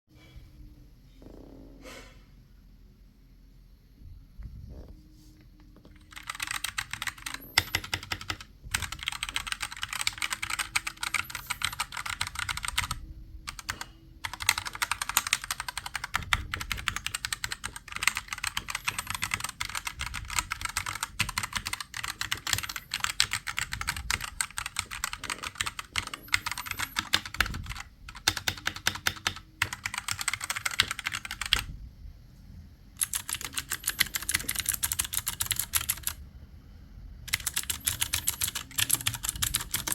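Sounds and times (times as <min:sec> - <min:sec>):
fast typing on a keyboard: 0:05.9 - 0:31.7, 0:33.0 - 0:36.2, 0:37.3 - 0:39.9.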